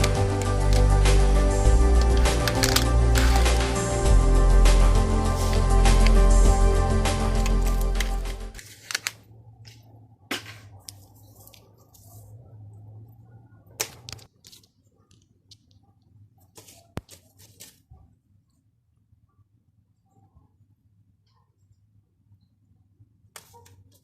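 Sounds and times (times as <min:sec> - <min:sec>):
background music: 0:00.0 - 0:08.6.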